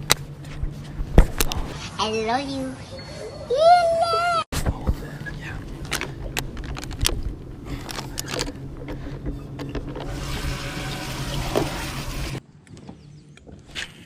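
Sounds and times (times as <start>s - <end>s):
steady low hum: 0.0s - 2.0s, 4.6s - 12.5s
water splashing and pouring: 10.0s - 12.4s.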